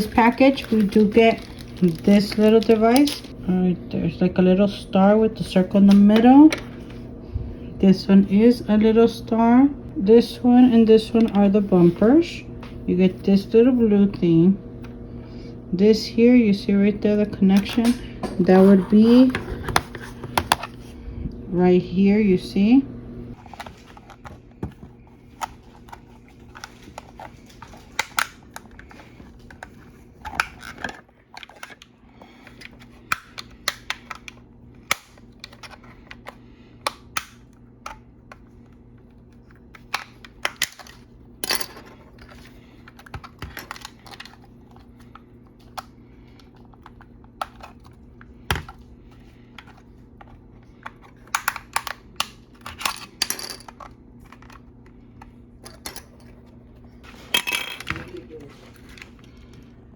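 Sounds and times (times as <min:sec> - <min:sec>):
faint steady hum: 0:00.0 - 0:59.9
plastic parts clicking: 0:00.6 - 0:03.3, 0:49.6 - 0:54.6.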